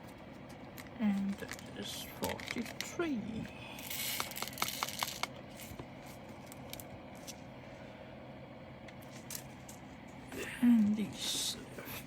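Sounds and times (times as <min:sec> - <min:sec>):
small bags handling noise: 0:00.0 - 0:03.0, 0:03.8 - 0:07.4
plastic beads clicking and rattling: 0:03.8 - 0:05.3.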